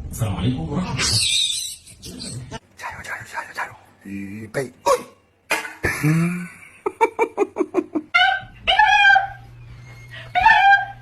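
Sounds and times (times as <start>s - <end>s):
dog yelping and whining: 8.2s - 9.5s, 10.2s - 11.0s.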